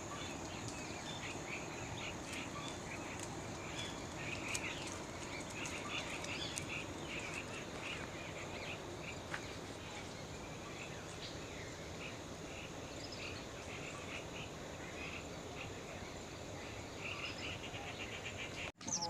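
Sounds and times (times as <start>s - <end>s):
small animals chirping: 0.0s - 10.1s
low background noise: 0.0s - 19.0s.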